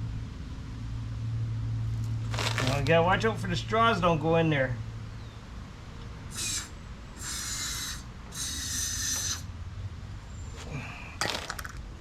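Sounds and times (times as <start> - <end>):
aerosol can hissing bursts: 6.3 - 9.4.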